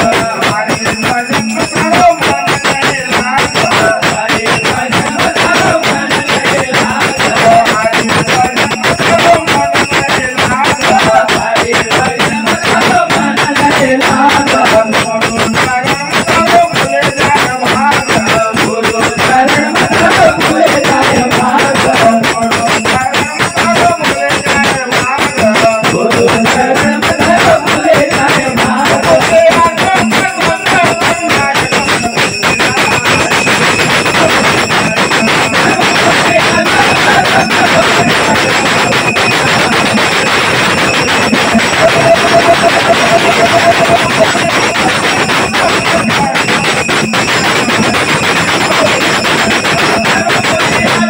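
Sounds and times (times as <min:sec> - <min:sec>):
fast dense drumming: 0:00.0 - 0:51.0
jingling percussion: 0:00.0 - 0:51.0.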